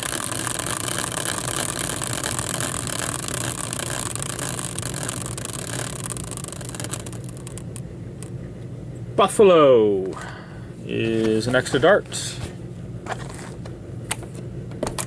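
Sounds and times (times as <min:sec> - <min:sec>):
prize wheel pointer ticking: 0:00.0 - 0:08.3.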